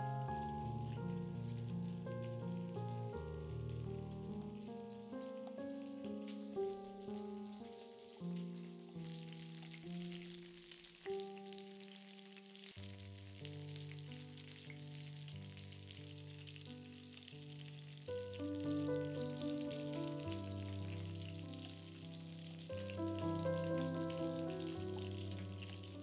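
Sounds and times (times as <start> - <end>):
crackling hiss: 0.0 - 26.0
slow music with held chords: 0.0 - 26.0.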